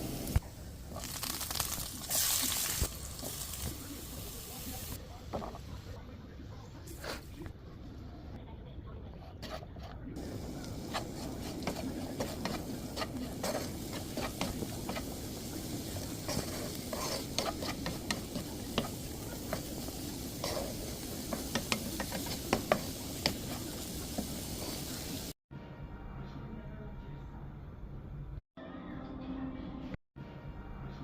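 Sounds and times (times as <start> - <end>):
food sizzling in a pan: 0.0 - 5.0, 10.2 - 25.4
utensil scraping a pan: 9.2 - 25.2.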